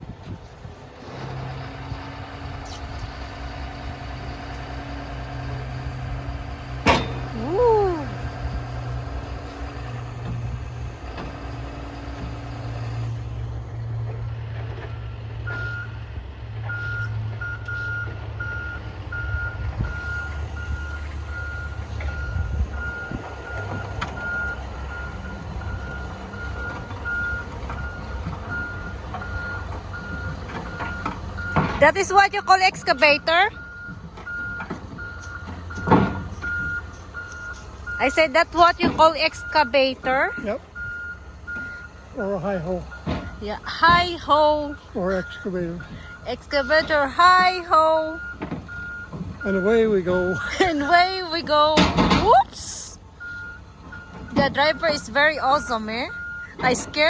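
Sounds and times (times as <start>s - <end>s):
heavy machine engine running: 0.0s - 57.0s
metal clank: 6.8s - 7.4s
backup alarm beeping: 16.7s - 52.5s, 53.2s - 57.0s.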